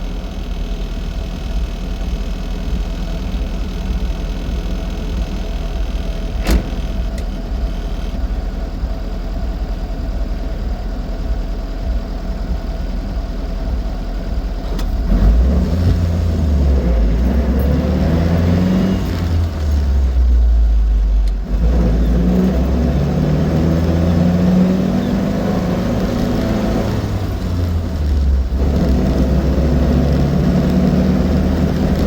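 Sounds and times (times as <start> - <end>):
car engine driving: 0.0 - 32.0
road rumble: 0.0 - 32.0
sharp click: 6.4 - 7.4.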